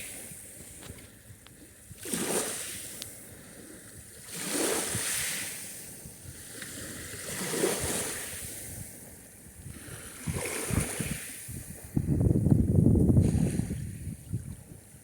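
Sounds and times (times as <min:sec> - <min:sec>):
waves breaking on shore: 0:00.0 - 0:12.3, 0:12.9 - 0:15.0
low rumbling wind gusts: 0:04.8 - 0:15.0.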